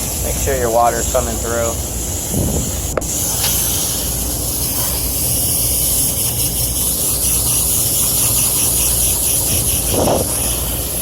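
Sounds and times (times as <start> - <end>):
water spraying onto metal coil: 3.0 - 11.0.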